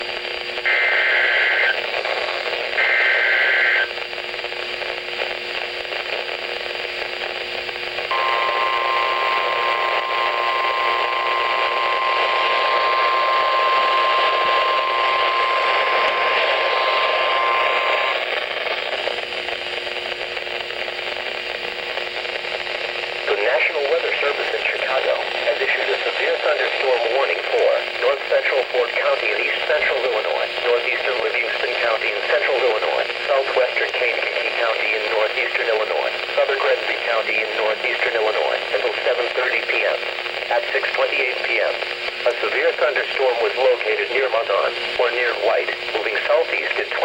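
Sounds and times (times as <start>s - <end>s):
static hiss: 0.0s - 47.0s
steady warning alarm tone: 8.1s - 18.2s.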